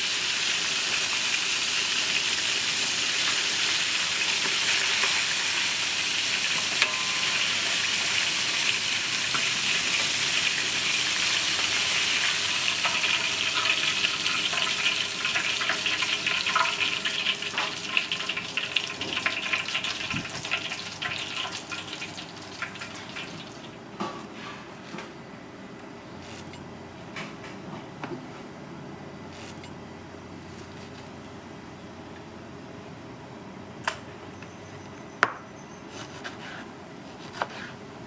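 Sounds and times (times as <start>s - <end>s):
food sizzling in oil: 0.0s - 23.8s
utensil scraping pan: 4.3s - 6.0s.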